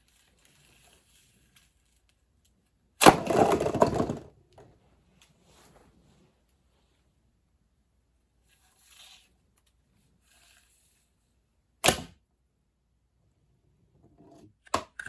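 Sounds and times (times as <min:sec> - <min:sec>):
faint rustling: 0:04.6 - 0:07.2.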